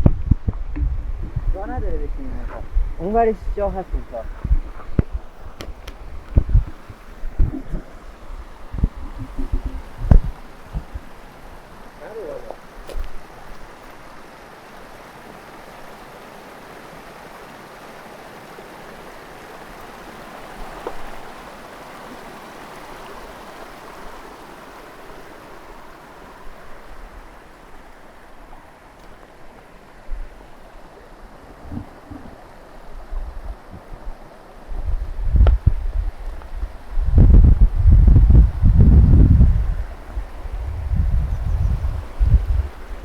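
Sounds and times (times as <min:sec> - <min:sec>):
low thumps: 0:00.0 - 0:11.2, 0:34.8 - 0:36.2
mountain stream water rushing: 0:00.0 - 0:43.0.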